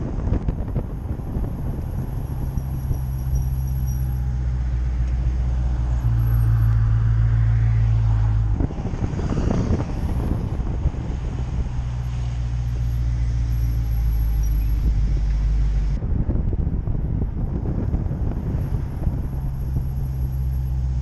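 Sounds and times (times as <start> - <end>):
car engine humming: 0.0 - 21.0
road and tyre noise: 0.0 - 21.0
high brake squeal: 2.6 - 4.3, 6.1 - 6.7, 13.4 - 14.9.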